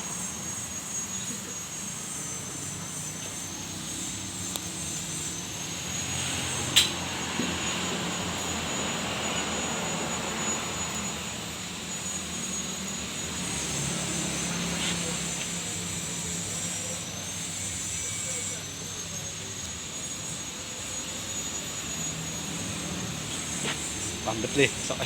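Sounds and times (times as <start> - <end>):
burner flame roaring: 0.0 - 25.0
sharp click: 6.8 - 7.0.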